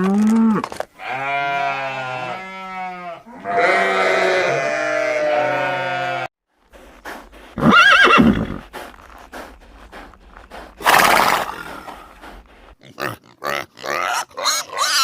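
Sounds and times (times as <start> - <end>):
horse blowing: 6.7 - 12.8
horse whinnying: 7.6 - 8.6, 10.8 - 11.9.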